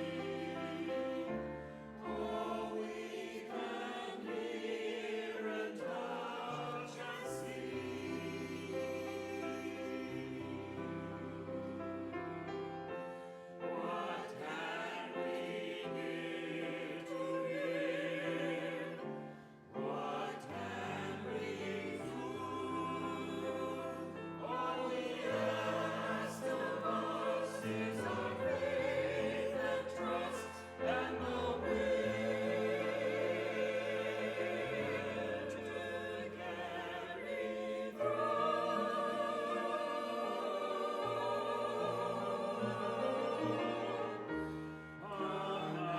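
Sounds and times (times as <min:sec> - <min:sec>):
choir singing: 0:00.0 - 0:45.9.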